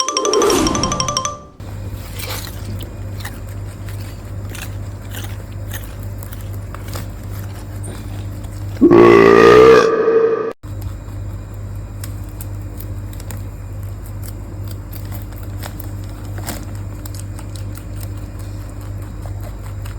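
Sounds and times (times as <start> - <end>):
steady low hum: 0.9 - 19.9
rabbit chewing: 1.6 - 8.8, 10.6 - 19.9
loud burp: 8.8 - 10.6.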